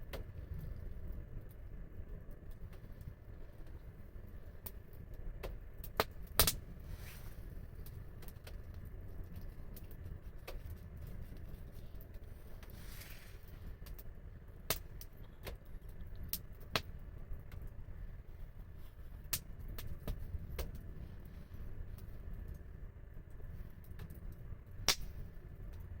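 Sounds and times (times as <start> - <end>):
steady low rumble: 0.0 - 26.0
wood fire crackling: 0.0 - 26.0
sharp pops of fire: 4.3 - 11.4, 12.0 - 17.8, 19.1 - 21.0, 23.5 - 25.9
soft hiss: 6.4 - 8.2, 9.2 - 25.9.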